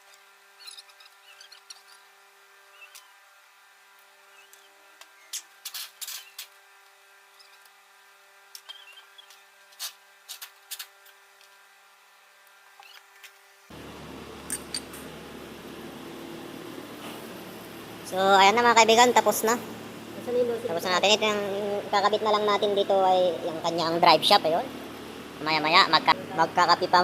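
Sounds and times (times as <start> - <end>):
faint steady hum: 0.0 - 27.0
loud steady background noise: 13.6 - 27.0.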